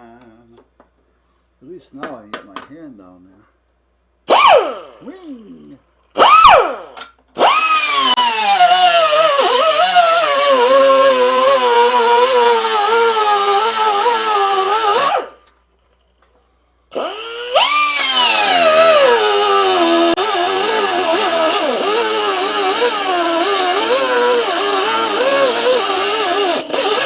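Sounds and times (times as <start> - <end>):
abrasive wheel cutting metal: 4.3 - 5.1, 6.2 - 15.4, 16.9 - 27.0.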